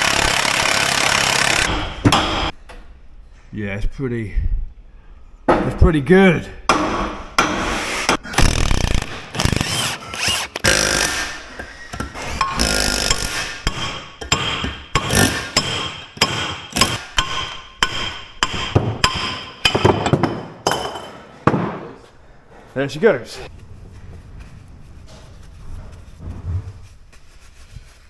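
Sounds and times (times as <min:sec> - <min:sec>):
hand tools knocking on metal: 0:00.0 - 0:02.5, 0:06.7 - 0:07.6, 0:10.6 - 0:22.0.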